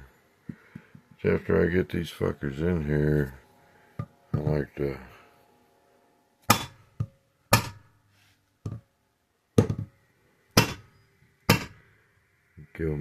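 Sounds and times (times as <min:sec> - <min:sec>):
hammer striking valve stems: 0:10.6 - 0:11.8.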